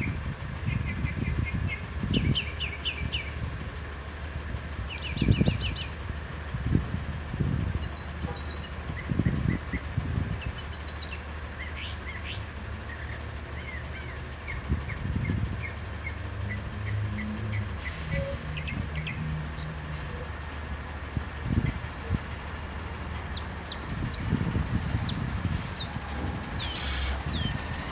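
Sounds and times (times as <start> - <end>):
mockingbird singing: 0.0 - 3.4, 4.9 - 6.0, 7.8 - 27.7.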